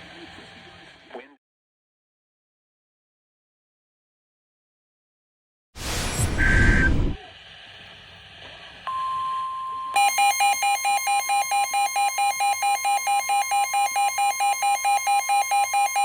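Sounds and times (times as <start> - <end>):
steady broadcast alert tone: 5.8 - 7.2
loud rapid alarm beeping: 6.0 - 7.2, 10.0 - 16.0.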